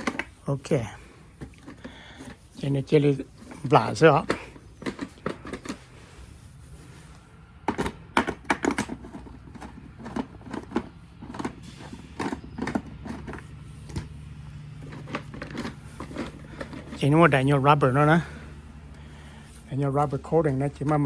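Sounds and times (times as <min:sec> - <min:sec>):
tools tapping plastic casing: 0:00.0 - 0:00.4, 0:01.3 - 0:05.8, 0:07.6 - 0:17.4.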